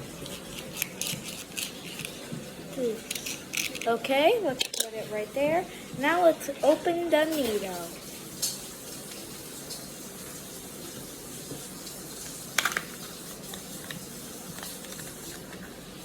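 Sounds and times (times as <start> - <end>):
plastic crinkling: 0.2 - 5.0, 12.3 - 15.9
plastic packaging clicks: 3.1 - 3.9, 12.6 - 15.6.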